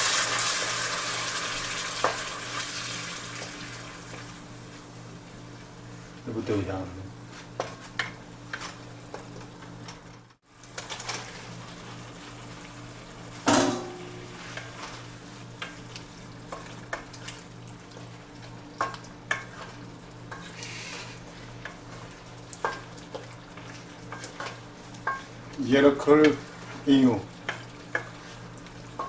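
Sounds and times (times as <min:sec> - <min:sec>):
food sizzling in a pan: 0:00.0 - 0:09.8, 0:10.4 - 0:29.0
utensil scraping a pan: 0:20.3 - 0:22.8.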